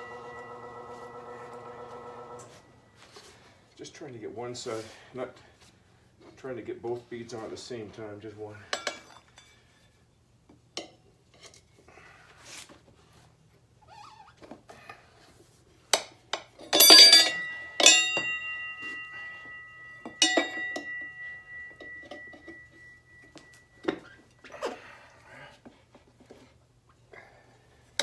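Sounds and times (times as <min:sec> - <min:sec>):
metallic ring: 0:00.0 - 0:03.0, 0:16.7 - 0:24.5
tire irons clanking on rim: 0:16.8 - 0:24.2.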